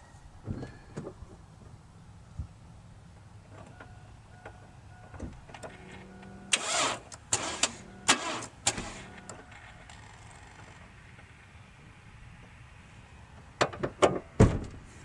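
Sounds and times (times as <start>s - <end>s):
starter motor bursts: 6.5s - 9.2s.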